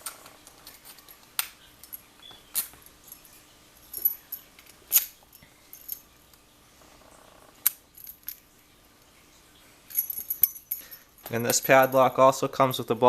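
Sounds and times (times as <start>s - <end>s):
metal clicks and clinks: 9.9s - 12.2s.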